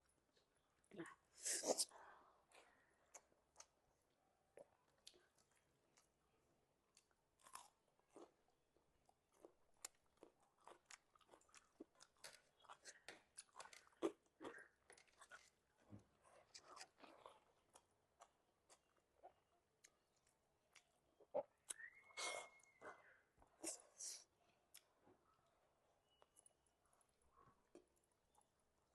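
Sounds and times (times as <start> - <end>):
person chewing: 9.0 - 22.8
wet mouth clicks and smacks: 21.6 - 22.0.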